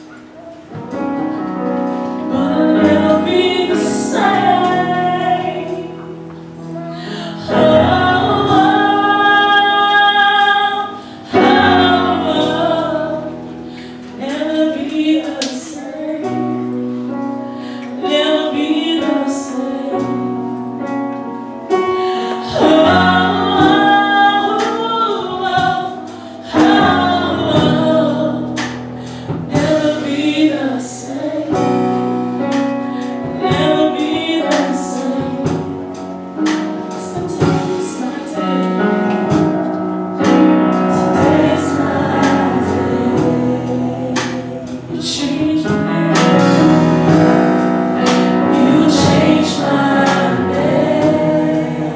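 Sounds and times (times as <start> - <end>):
gospel choir singing: 0.0 - 51.9
keyboard or bass notes: 31.2 - 51.9.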